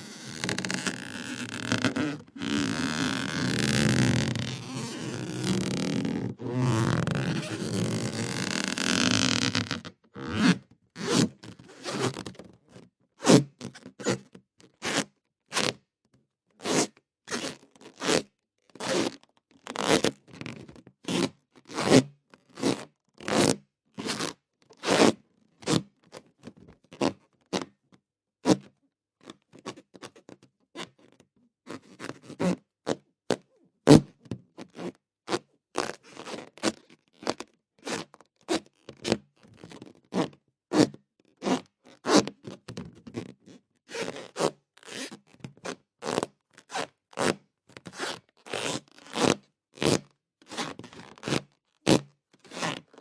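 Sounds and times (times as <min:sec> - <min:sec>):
rubber balloon squeaking: 0:00.0 - 0:12.3, 0:48.0 - 0:52.9.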